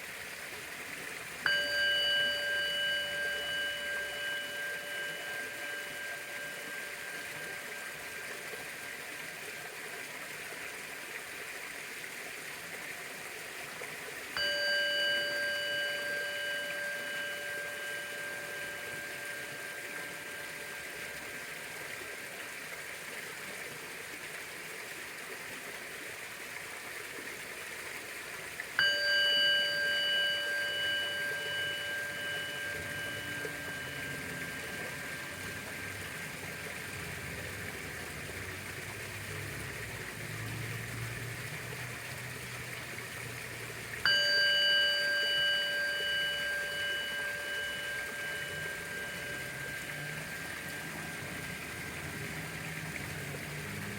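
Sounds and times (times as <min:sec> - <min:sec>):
background hiss: 0:00.0 - 0:10.2, 0:13.8 - 0:24.2, 0:27.8 - 0:53.9
bowl bell ringing: 0:01.4 - 0:09.7, 0:14.3 - 0:23.1, 0:28.8 - 0:53.9.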